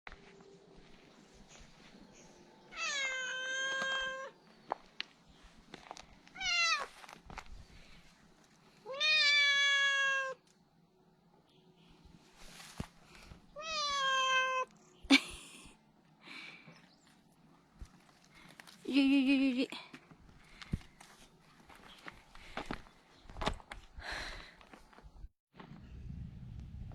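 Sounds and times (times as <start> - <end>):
cat meowing: 2.7 - 4.4, 6.4 - 6.9, 8.8 - 10.5, 13.6 - 14.8.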